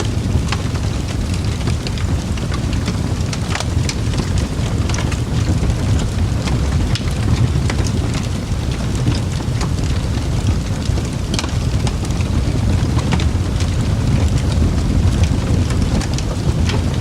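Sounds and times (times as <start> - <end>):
fire crackling and popping: 0.0 - 17.0
low fire rumble: 0.0 - 17.0.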